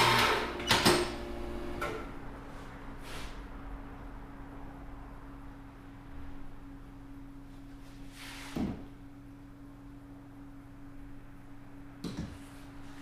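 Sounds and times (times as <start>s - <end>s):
espresso machine humming: 0.0s - 1.8s.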